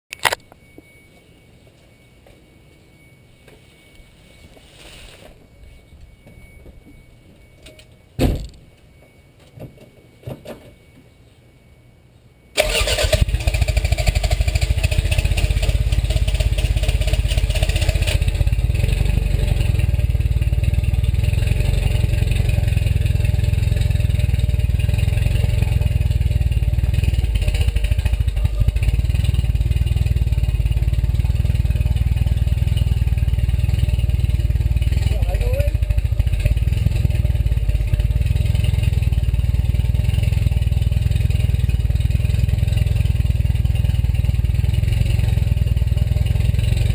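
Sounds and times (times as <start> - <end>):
engine cranking not firing: 12.6 - 18.5.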